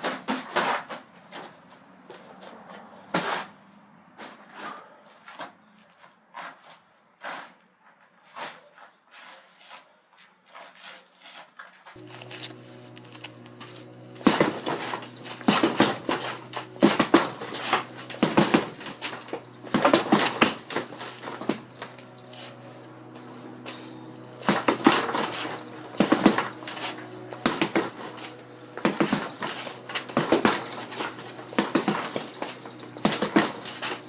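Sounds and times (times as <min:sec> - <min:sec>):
steady hum: 0:12.0 - 0:34.0.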